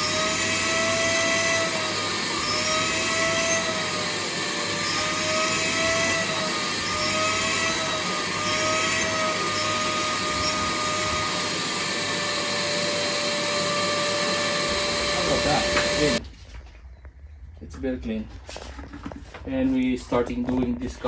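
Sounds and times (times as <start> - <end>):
vacuum cleaner running: 0.0 - 16.2.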